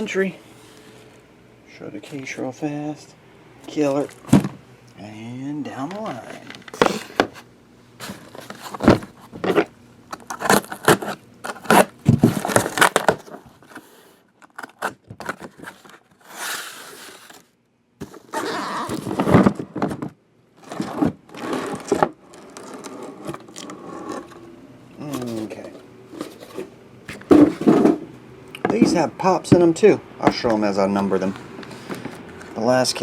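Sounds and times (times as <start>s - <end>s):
cardboard and plastic wrap rustling: 3.6s - 4.6s, 5.8s - 24.4s, 25.0s - 28.1s.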